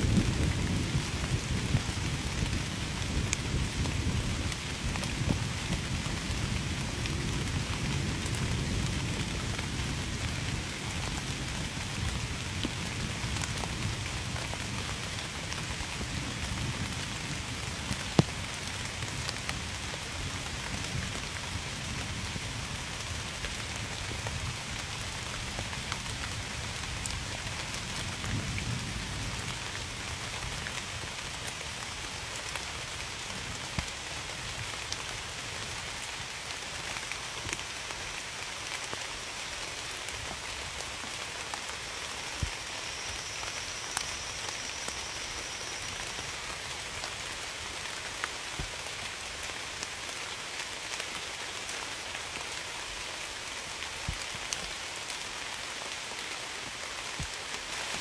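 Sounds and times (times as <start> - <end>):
low rumble of thunder: 0.0 - 15.0
rain pattering: 0.0 - 58.0.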